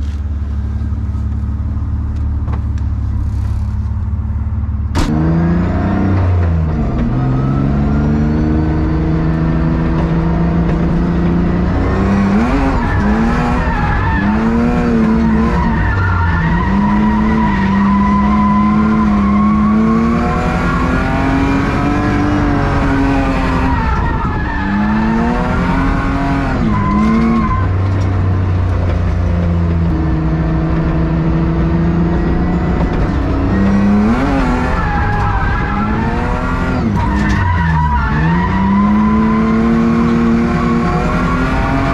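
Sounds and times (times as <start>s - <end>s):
car engine revving: 0.0s - 41.9s
tyre squeal: 11.6s - 29.8s, 32.4s - 41.9s.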